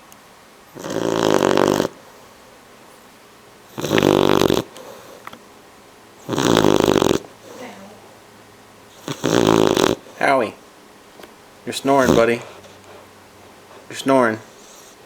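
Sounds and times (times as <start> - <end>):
puppy snoring: 0.7 - 2.4, 3.7 - 5.4, 6.2 - 8.0, 8.9 - 10.6, 11.7 - 13.0, 13.7 - 15.0.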